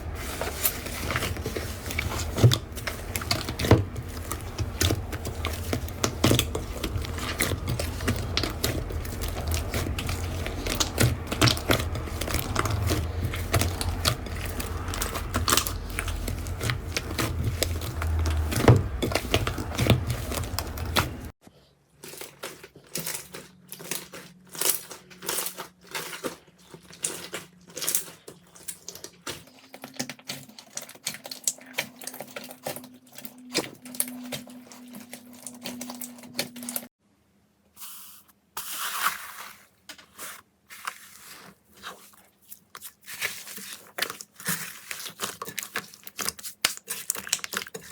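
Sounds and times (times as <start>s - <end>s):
slime crackling and popping: 0.0s - 21.3s.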